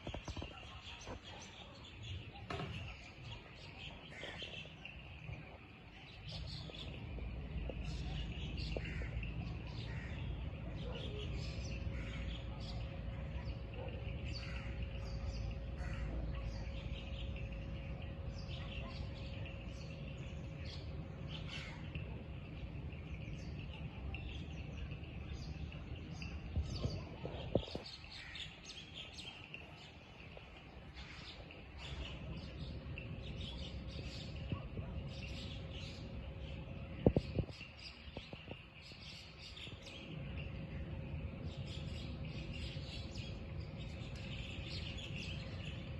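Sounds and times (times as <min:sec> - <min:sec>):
birds chirping: 0:00.0 - 0:45.9
low steady rumble: 0:05.2 - 0:27.3, 0:30.2 - 0:45.9
faint steady hum: 0:29.5 - 0:45.9.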